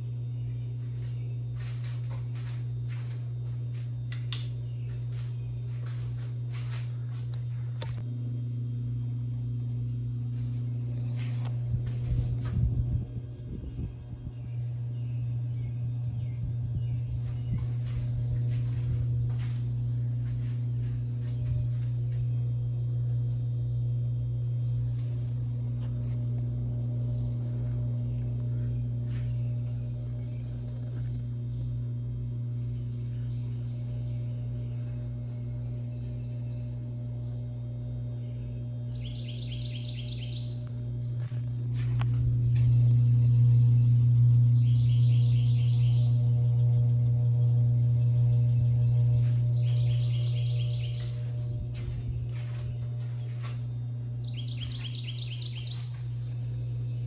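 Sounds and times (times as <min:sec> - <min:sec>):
ceiling fan motor humming: 0:00.0 - 0:57.0
bird trilling: 0:54.2 - 0:56.0.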